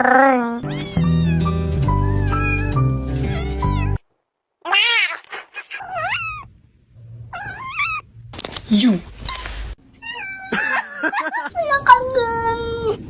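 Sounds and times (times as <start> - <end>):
cat meowing: 0.0 - 4.0, 4.6 - 6.5, 7.3 - 8.0, 9.3 - 10.6
music track: 0.6 - 4.0.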